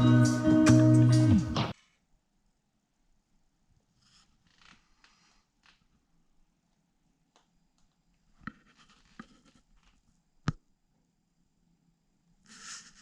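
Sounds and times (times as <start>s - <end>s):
faint scraping and rustling: 3.9s - 6.2s, 8.3s - 10.3s, 12.4s - 13.0s.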